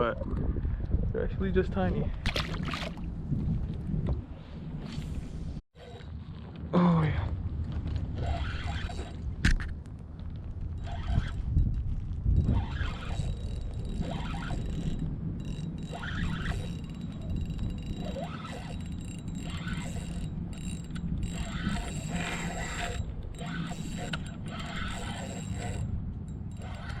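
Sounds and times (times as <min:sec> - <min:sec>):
fishing reel ticking and whirring: 0:08.1 - 0:09.4, 0:10.8 - 0:27.0.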